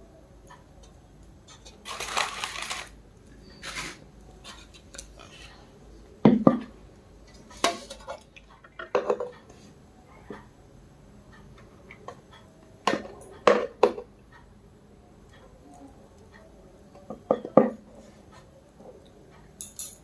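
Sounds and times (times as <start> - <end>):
dishes knocking: 6.3 - 6.7, 8.8 - 9.3, 12.9 - 14.1, 17.1 - 17.8
dishes clinking: 7.6 - 9.4, 17.1 - 17.8, 19.6 - 20.0.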